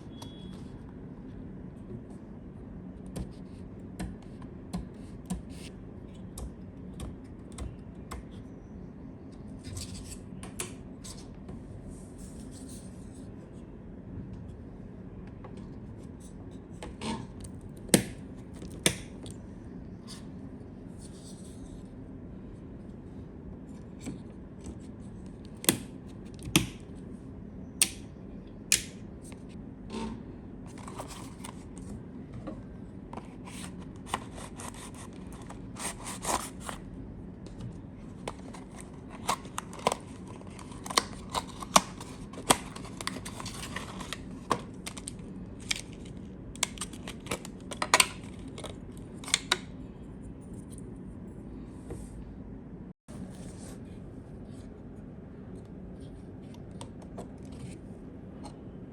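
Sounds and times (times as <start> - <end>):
packaging scraping and rustling: 33.2 - 36.8, 38.2 - 48.8.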